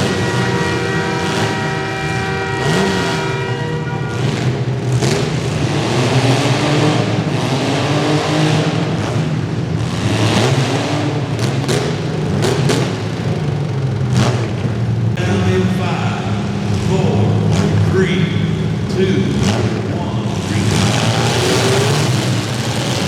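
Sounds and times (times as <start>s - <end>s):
car engines revving: 0.0s - 23.0s.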